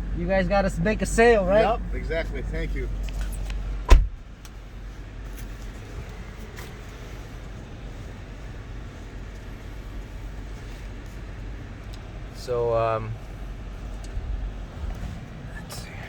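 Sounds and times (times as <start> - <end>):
car engine idling: 0.0 - 16.0
car door shutting: 3.2 - 4.6.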